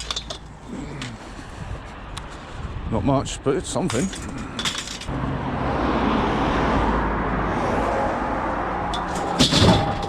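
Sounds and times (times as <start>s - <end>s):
vehicle engine rumble: 3.8s - 10.0s.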